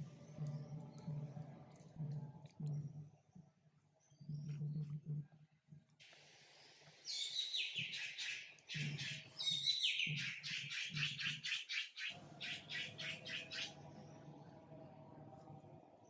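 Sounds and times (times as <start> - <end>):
high-pitched chirping calls: 7.1 - 13.8.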